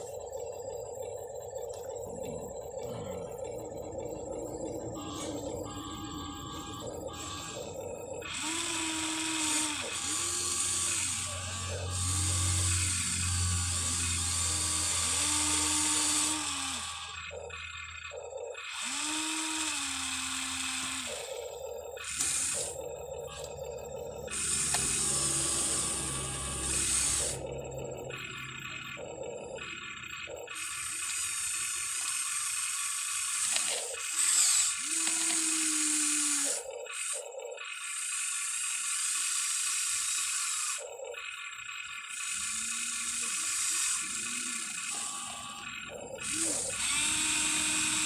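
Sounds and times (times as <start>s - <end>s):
toy excavator motors whining: 0.0s - 48.0s.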